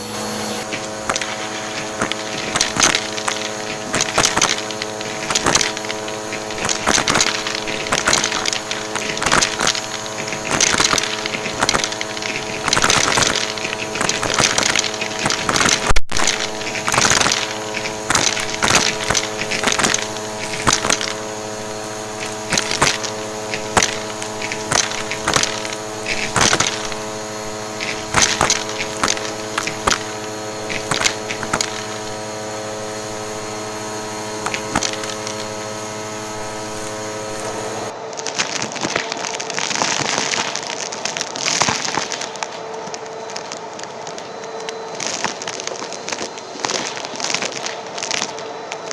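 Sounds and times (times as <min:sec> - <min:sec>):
brush attachment brushing surface: 0:00.0 - 0:37.9
vacuum cleaner motor hum: 0:00.0 - 0:48.9.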